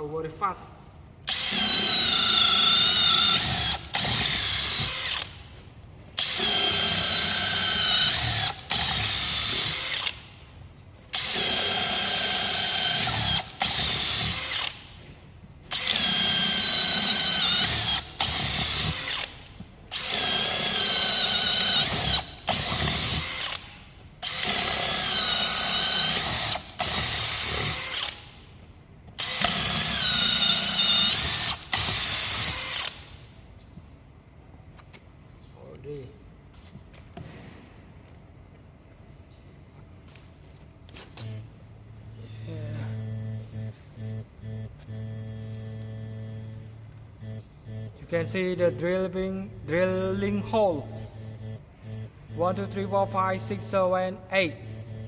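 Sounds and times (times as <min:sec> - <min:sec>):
cordless drill boring through wood: 0:01.3 - 0:05.4, 0:06.2 - 0:10.2, 0:11.1 - 0:14.8, 0:15.7 - 0:28.2, 0:29.2 - 0:33.0, 0:41.2 - 0:55.0.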